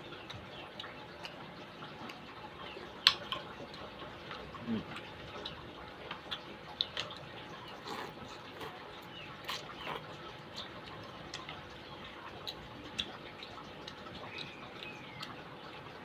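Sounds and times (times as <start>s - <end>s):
chewing clicks and smacks: 0.1s - 15.7s
slurp: 7.0s - 10.2s.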